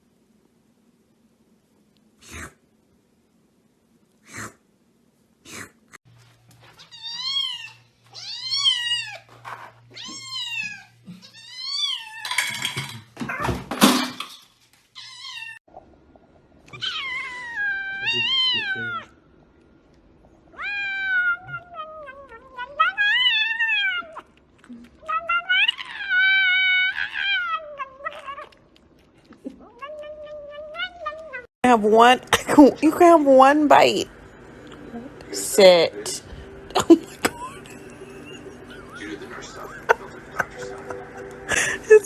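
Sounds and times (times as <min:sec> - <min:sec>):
cat meowing: 0:06.8 - 0:09.3, 0:16.7 - 0:19.1, 0:20.6 - 0:24.3, 0:25.0 - 0:28.6, 0:29.6 - 0:31.5.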